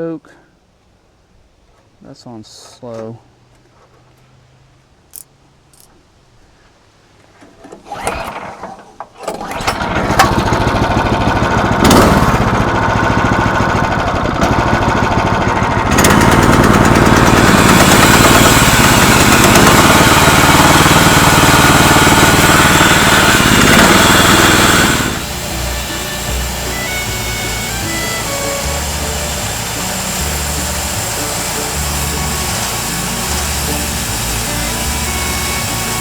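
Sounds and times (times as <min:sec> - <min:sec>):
small gas engine running: 0:07.8 - 0:36.0
background music: 0:25.2 - 0:36.0.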